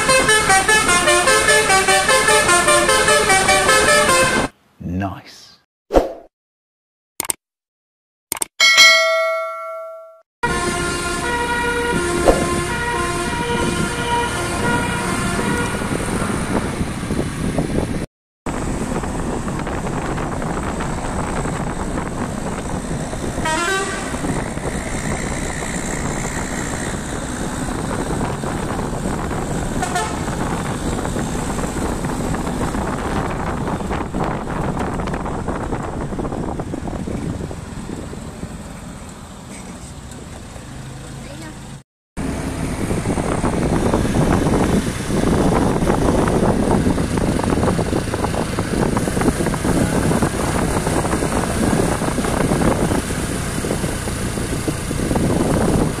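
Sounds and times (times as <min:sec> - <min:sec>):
musical air horn tune: 0:00.0 - 0:04.5, 0:10.4 - 0:15.8, 0:29.8 - 0:30.2.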